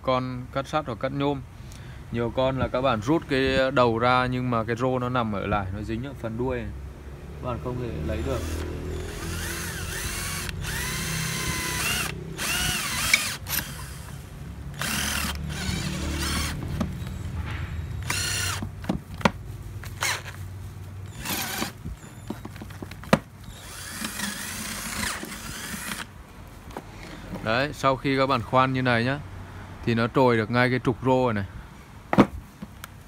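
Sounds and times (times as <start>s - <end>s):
electric drill whining: 8.2s - 17.2s, 18.0s - 18.7s, 21.1s - 22.4s, 23.4s - 26.1s.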